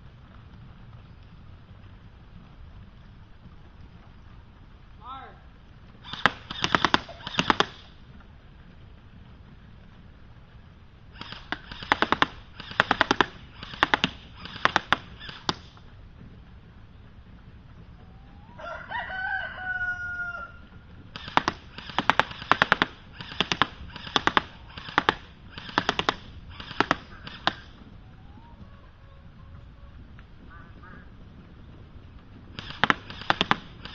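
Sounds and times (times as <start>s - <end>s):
airsoft rifle firing: 6.0s - 8.0s, 11.1s - 15.9s, 21.1s - 27.9s, 32.5s - 33.9s
rooster crowing: 18.0s - 20.8s, 28.0s - 31.0s.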